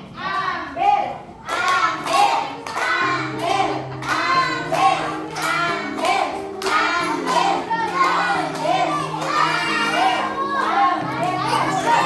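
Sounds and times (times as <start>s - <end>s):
children singing: 1.6s - 12.0s.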